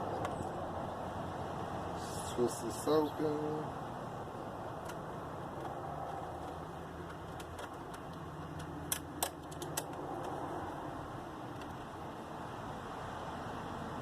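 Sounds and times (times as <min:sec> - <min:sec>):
steady low background noise: 0:00.0 - 0:14.0
screwdriver metallic clicks: 0:07.1 - 0:10.4.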